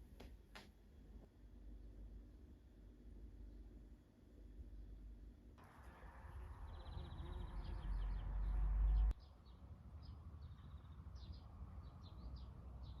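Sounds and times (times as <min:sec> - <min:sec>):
songbirds chirping: 0:05.6 - 0:13.0.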